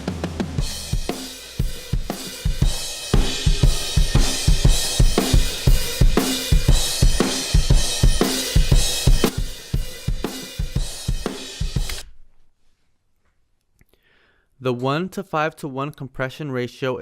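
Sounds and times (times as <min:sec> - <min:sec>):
cymbals: 0:00.0 - 0:12.0
snare drum: 0:00.0 - 0:12.0.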